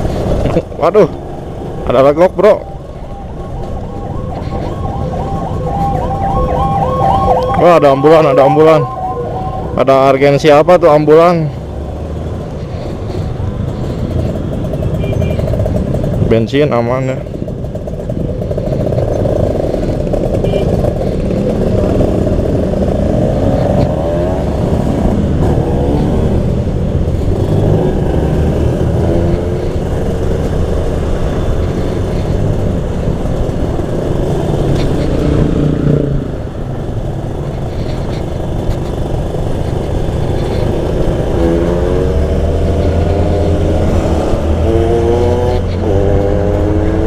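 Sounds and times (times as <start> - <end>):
motorcycle engine accelerating: 11.9 - 47.0.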